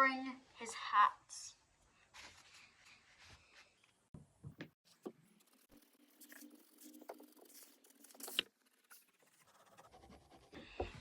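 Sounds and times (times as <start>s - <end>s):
pencil scratching on paper: 4.9s - 11.0s.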